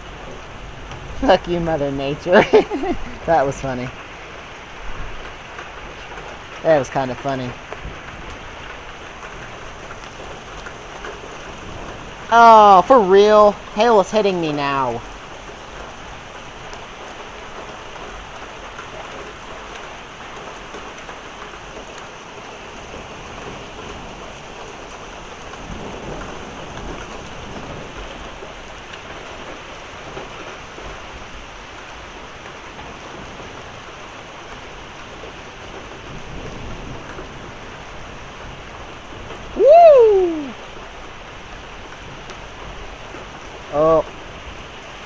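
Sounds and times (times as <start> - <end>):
heavy rain and hail: 0.0 - 45.0
person exclaiming: 1.2 - 3.9, 12.3 - 15.0, 39.6 - 40.6, 43.7 - 44.1.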